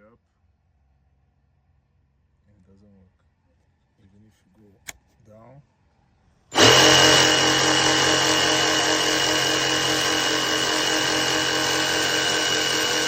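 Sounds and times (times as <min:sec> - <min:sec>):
jig saw running: 0:06.5 - 0:13.0.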